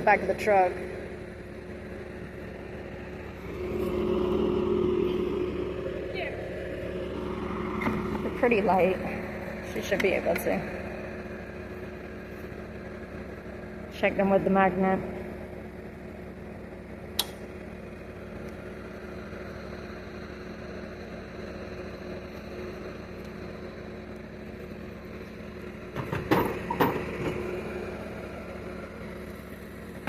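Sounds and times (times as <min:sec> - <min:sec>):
vehicle engine idling: 0:00.0 - 0:30.0
sharp click: 0:17.2 - 0:17.4
knocks and clanks: 0:25.9 - 0:27.5.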